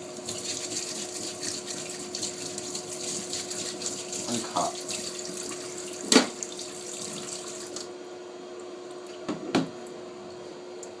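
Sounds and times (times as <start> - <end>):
tap water running into sink: 0.0 - 7.9.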